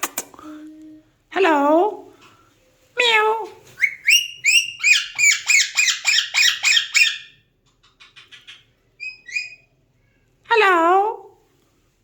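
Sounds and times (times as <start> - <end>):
parakeet squawking: 3.8 - 7.4.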